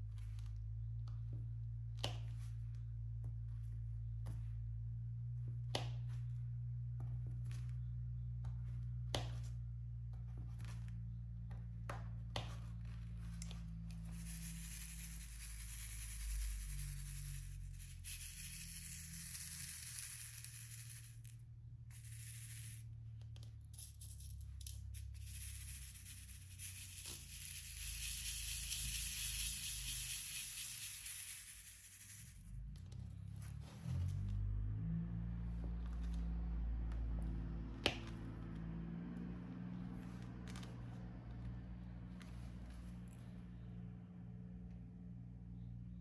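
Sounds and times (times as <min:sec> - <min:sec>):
low steady hum: 0:00.0 - 0:33.3
small plastic pieces rattling: 0:13.4 - 0:21.3, 0:21.9 - 0:22.8, 0:23.4 - 0:32.4.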